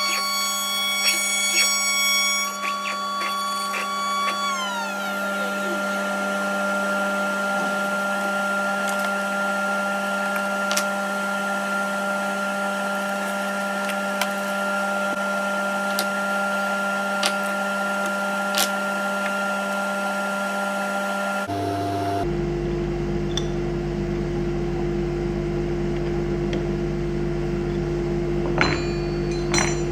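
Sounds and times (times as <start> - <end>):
higher whine falling in pitch: 0.0 - 17.2, 19.0 - 29.9
router motor hum and whine: 0.0 - 29.9.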